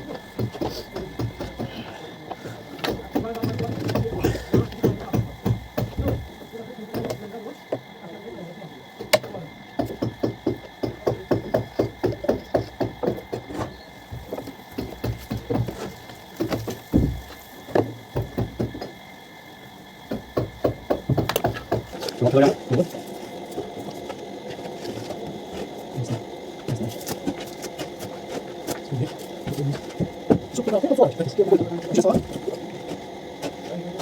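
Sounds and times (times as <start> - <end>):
faint high whine: 0.0 - 34.0.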